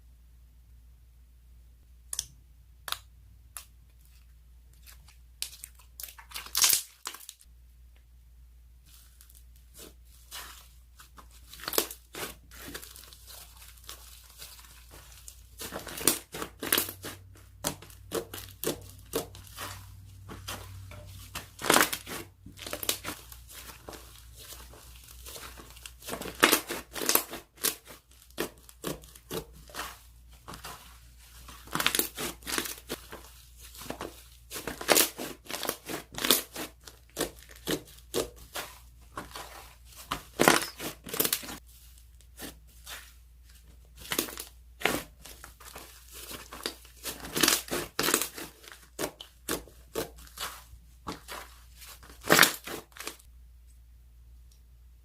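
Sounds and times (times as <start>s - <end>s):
slime crackling and popping: 5.4s - 7.4s, 11.4s - 33.1s, 33.8s - 41.6s, 44.0s - 53.2s.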